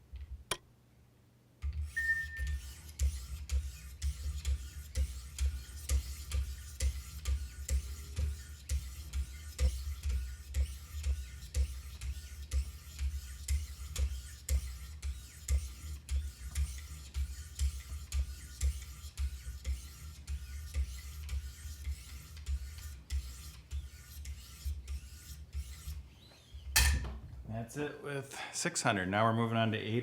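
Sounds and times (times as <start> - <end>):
sharpening stone rasping on blade: 21.6 - 26.0.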